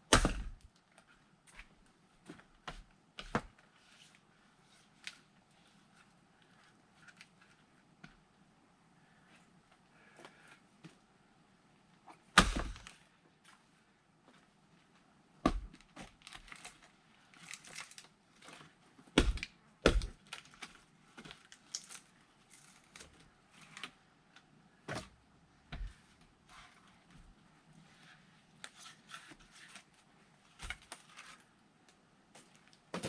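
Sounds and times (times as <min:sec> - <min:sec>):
wood cracking and rustling: 0:15.7 - 0:18.7, 0:20.0 - 0:23.9.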